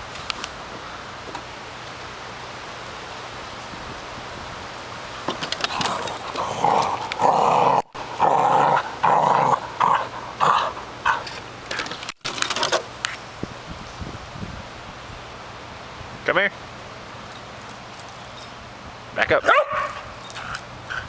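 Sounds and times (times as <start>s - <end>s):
dog snarling and growling: 5.7s - 11.4s.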